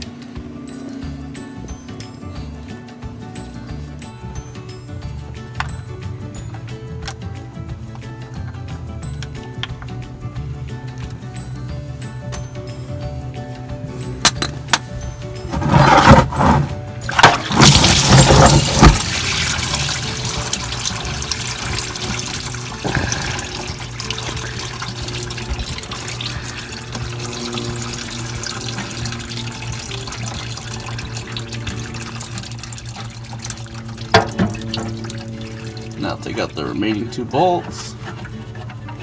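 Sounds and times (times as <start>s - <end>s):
fluid pouring into a pan: 15.7s - 39.0s.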